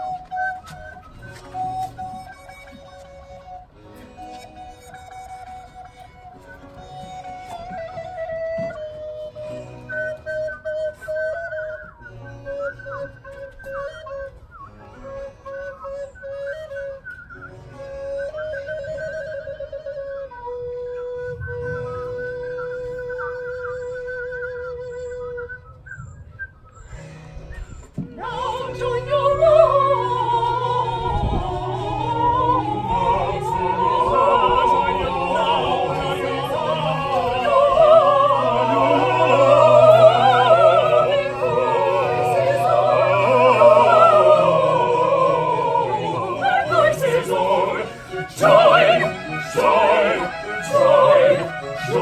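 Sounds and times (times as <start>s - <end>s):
instrumental accompaniment: 0.0s - 25.5s, 26.8s - 52.0s
flute-like note: 0.0s - 52.0s
operatic singing: 28.1s - 52.0s.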